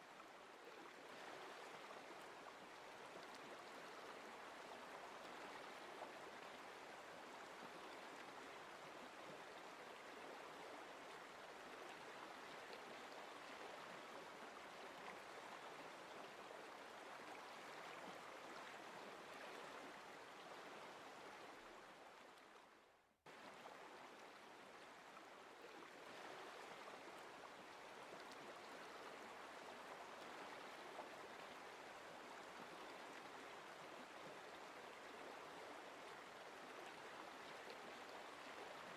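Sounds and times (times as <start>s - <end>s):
faint flowing stream: 0.0s - 38.9s.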